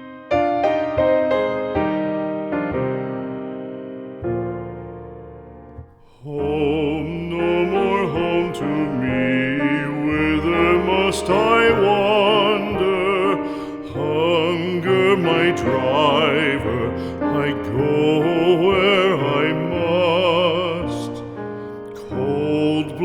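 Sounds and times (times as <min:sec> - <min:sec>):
piano: 0:00.0 - 0:23.0
person singing with vibrato: 0:06.0 - 0:23.0.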